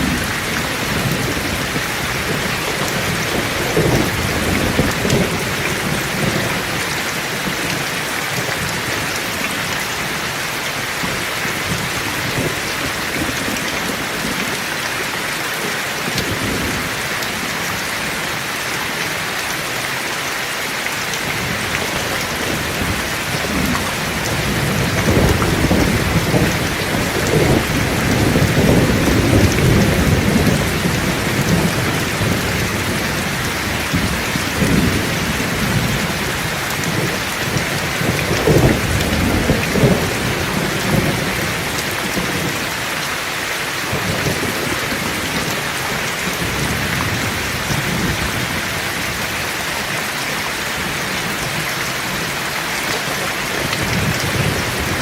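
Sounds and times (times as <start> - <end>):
low thunder rumbling: 0.0 - 7.9, 21.3 - 42.8, 53.6 - 55.0
heavy rain falling: 0.0 - 55.0.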